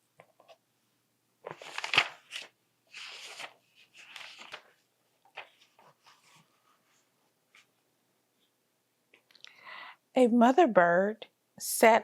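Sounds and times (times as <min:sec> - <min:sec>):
paper pages rustling: 0:01.4 - 0:07.8.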